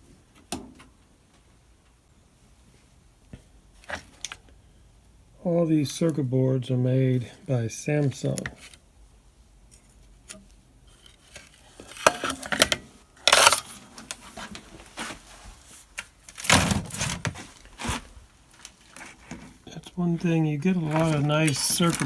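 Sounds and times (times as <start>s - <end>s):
rustling scraping noise: 9.7s - 22.0s.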